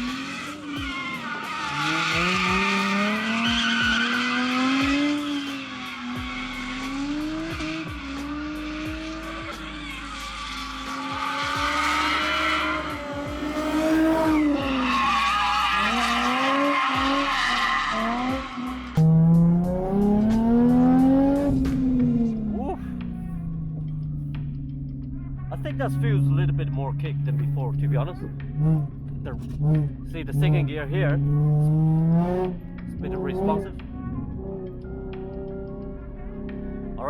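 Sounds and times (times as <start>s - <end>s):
background music: 0.0s - 37.0s
car engine revving: 0.0s - 37.0s
tyres squealing: 0.1s - 6.4s, 9.2s - 19.0s.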